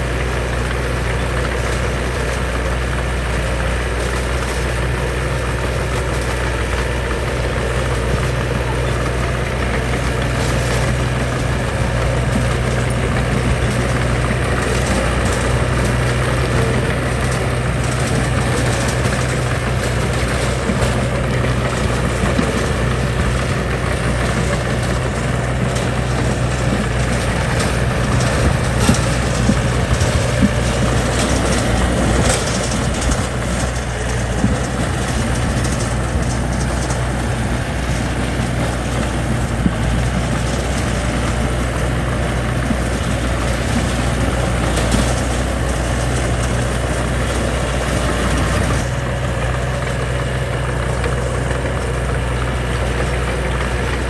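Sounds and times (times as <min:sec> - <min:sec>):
heavy diesel engine droning: 0:00.0 - 0:54.0.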